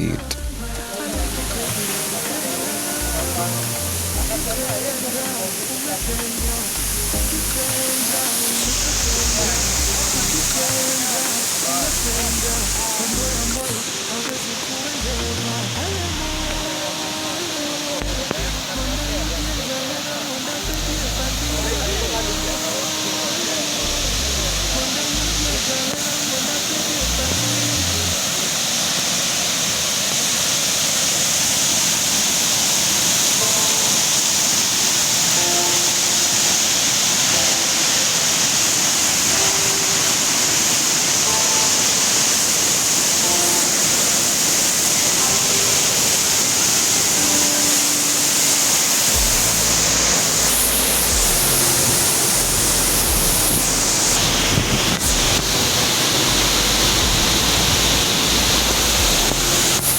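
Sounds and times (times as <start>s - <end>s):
waterfall roaring: 0.0s - 59.9s
low rumble: 49.2s - 59.9s.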